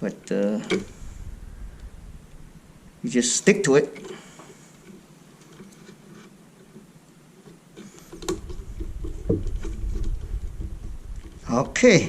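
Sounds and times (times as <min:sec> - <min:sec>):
low rumble with knocks: 0:08.4 - 0:11.5.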